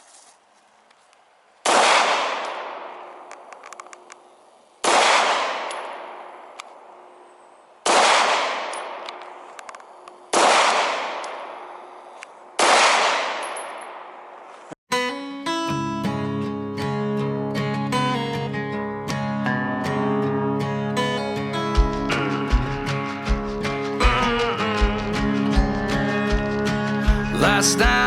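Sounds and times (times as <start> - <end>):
pistol shots echoing: 1.6 - 4.1, 4.8 - 14.4
acoustic guitar music: 14.9 - 28.0.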